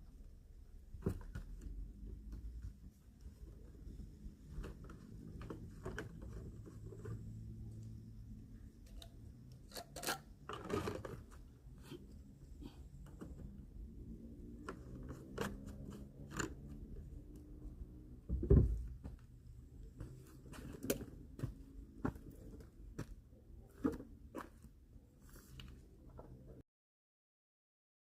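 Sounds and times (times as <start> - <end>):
faint low hum: 0.0 - 26.6.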